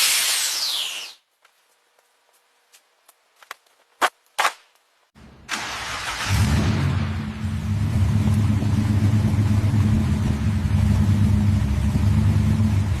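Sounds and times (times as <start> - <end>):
car engine idling: 5.2 - 13.0.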